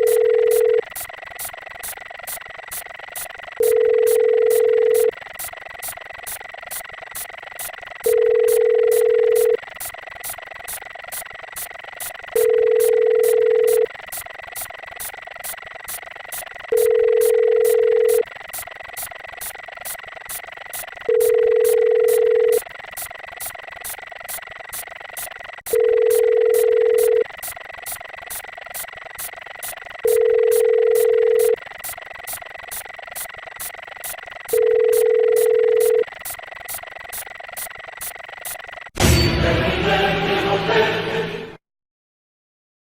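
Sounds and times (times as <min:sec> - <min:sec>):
telephone ringback tone: 0:00.0 - 0:00.9, 0:03.6 - 0:05.2, 0:08.0 - 0:09.6, 0:12.3 - 0:13.9, 0:16.7 - 0:18.3, 0:21.1 - 0:22.6, 0:25.7 - 0:27.3, 0:30.0 - 0:31.6, 0:34.5 - 0:36.1
fast even ticking: 0:00.0 - 0:38.9.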